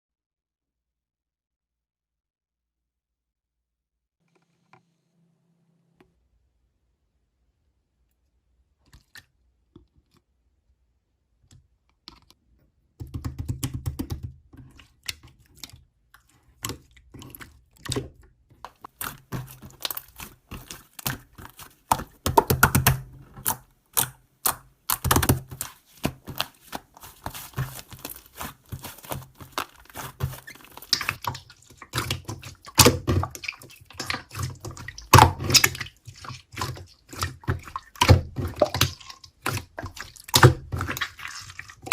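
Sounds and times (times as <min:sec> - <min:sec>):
slime clicking and squelching: 0:13.0 - 0:41.9.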